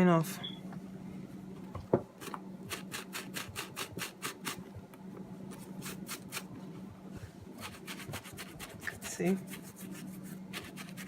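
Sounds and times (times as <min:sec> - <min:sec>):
brush scrubbing leather: 0:07.6 - 0:11.0.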